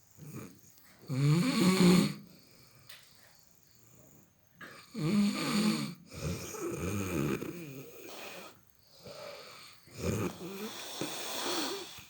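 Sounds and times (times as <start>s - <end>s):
person snoring: 5.0s - 12.0s.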